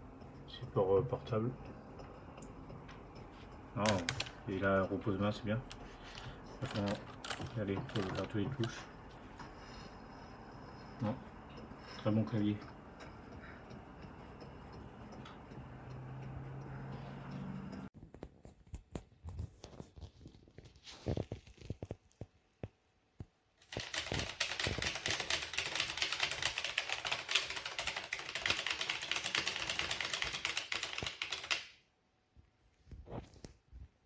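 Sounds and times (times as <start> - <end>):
keyboard typing clicks: 3.8 - 4.9, 5.7 - 9.5, 23.6 - 31.7.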